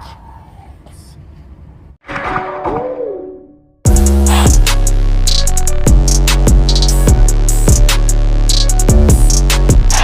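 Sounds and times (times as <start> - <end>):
deep kick drums: 3.9 - 4.8, 5.9 - 8.0
drum machine beat: 3.9 - 10.0
hi-hat ticks: 3.9 - 10.0
steady bass: 3.9 - 10.0.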